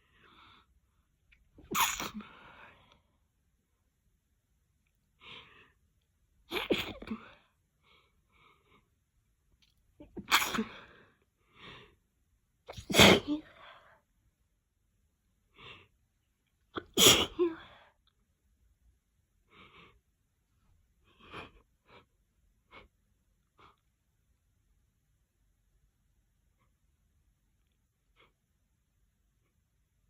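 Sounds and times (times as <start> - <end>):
person sneezing: 1.6 - 2.4, 6.5 - 7.2, 10.1 - 10.9, 12.7 - 13.5, 16.8 - 17.7.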